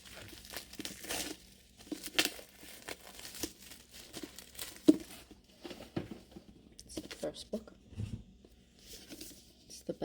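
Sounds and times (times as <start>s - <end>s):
packaging crinkling and rustling: 0.0s - 7.4s.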